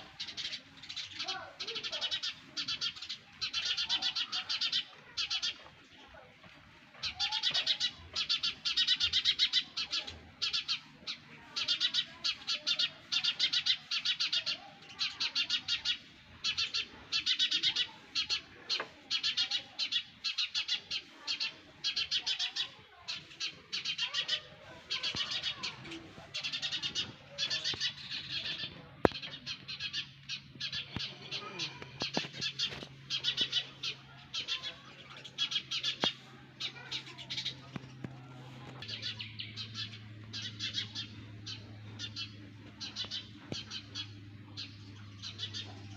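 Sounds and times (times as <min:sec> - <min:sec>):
baby sparrows chirping: 0:00.0 - 0:45.9.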